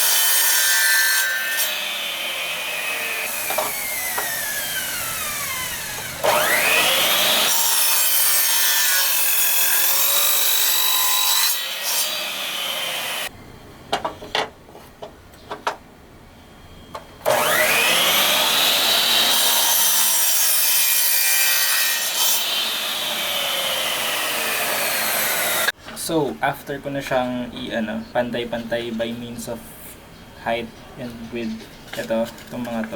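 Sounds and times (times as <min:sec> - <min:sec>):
power tool cutting wood: 0:00.0 - 0:13.3, 0:17.2 - 0:25.7.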